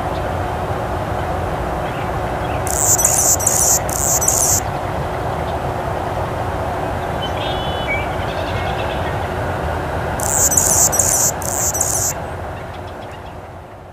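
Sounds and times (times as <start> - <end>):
outdoor background noise: 0.0 - 13.9
faint chirps: 2.7 - 4.6, 10.2 - 12.2
high buzzy calls: 2.7 - 4.7, 10.2 - 12.2.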